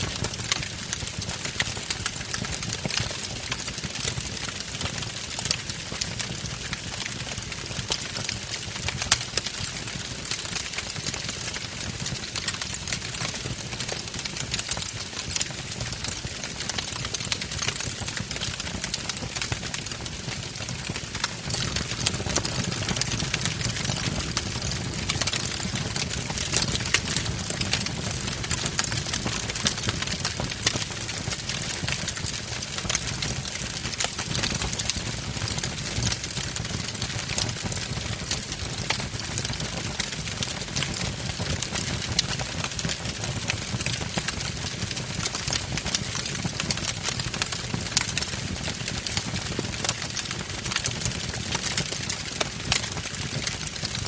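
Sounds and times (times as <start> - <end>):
wood fire crackling and popping: 0.0 - 54.0
fire low rumble: 18.4 - 32.9.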